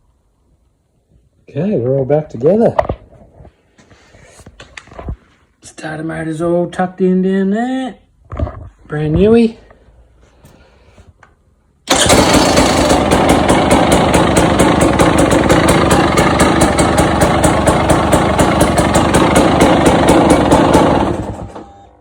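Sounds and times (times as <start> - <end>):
two-stroke engine idling: 11.9 - 21.6.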